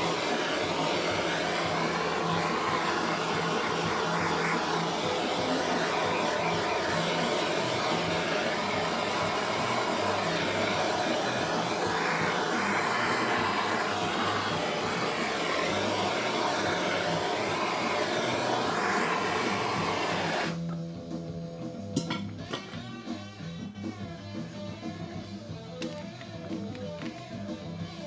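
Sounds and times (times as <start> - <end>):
heat gun blowing: 0.0 - 20.7.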